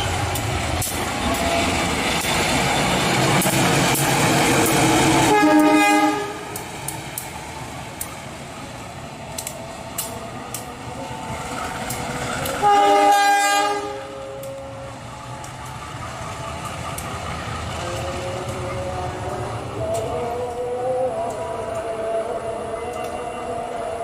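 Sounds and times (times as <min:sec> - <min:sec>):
passing train rumble: 0:00.0 - 0:24.0
locomotive horn blast: 0:05.1 - 0:06.6, 0:12.3 - 0:15.1
scattered clicks: 0:06.5 - 0:08.2, 0:09.3 - 0:10.8, 0:11.6 - 0:12.6, 0:15.4 - 0:15.8, 0:16.6 - 0:17.3, 0:22.9 - 0:23.2.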